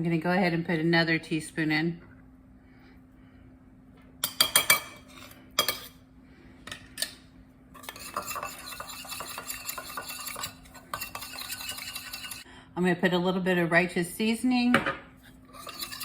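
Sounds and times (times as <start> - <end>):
metal spoon clinking on dish: 4.2 - 6.0, 7.8 - 12.4, 15.6 - 16.0
spoon stirring and scraping dish: 4.2 - 6.0, 6.7 - 12.5, 15.2 - 16.0.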